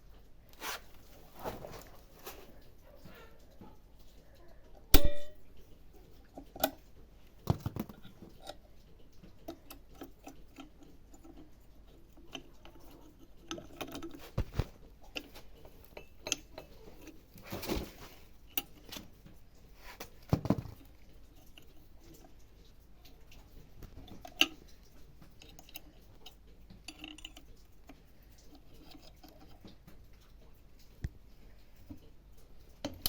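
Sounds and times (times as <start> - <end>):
rustling: 0.3 - 4.3, 13.8 - 22.8.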